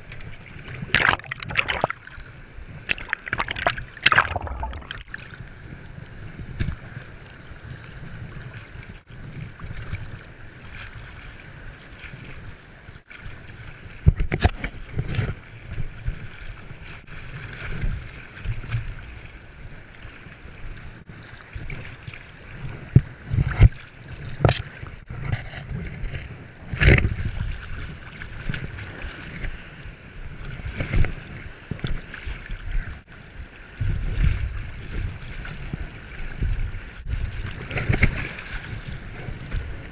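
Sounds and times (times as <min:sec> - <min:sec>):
seawater sloshing: 0:00.1 - 0:05.6, 0:33.7 - 0:39.9
sharp water slap: 0:00.9 - 0:02.1, 0:02.9 - 0:05.2
wind buffeting microphone: 0:22.5 - 0:39.9.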